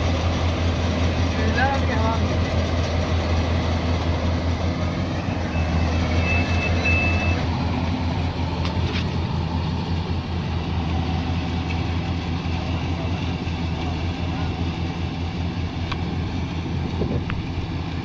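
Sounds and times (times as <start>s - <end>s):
diesel engine humming under load: 0.0s - 18.0s
short high beeps: 5.4s - 7.4s.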